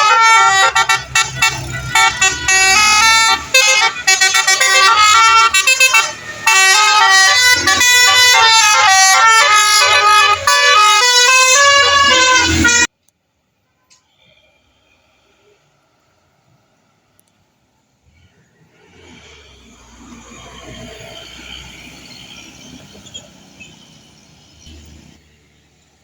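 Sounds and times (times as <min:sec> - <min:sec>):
musical bus air horn melody: 0:00.0 - 0:12.9.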